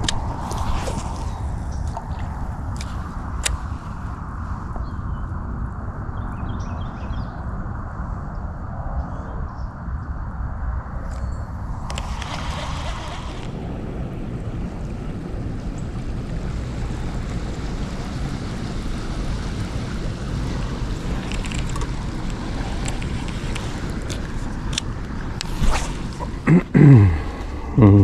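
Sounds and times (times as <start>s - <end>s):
creek water rushing: 12.0s - 13.6s.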